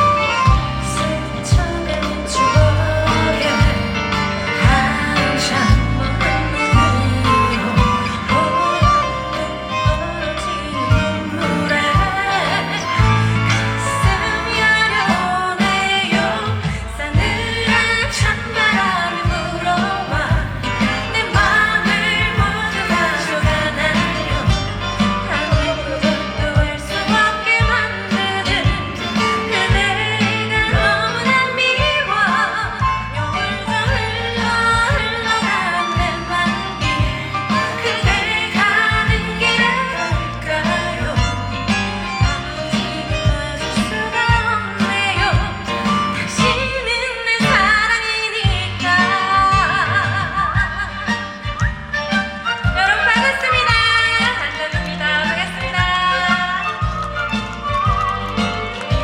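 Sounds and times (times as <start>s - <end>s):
backing music with drum beat: 0.0s - 59.0s
woman singing: 0.0s - 59.0s.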